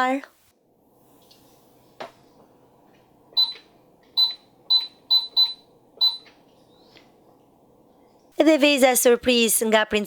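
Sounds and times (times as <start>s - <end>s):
toy cash register beeps: 4.2s - 6.2s.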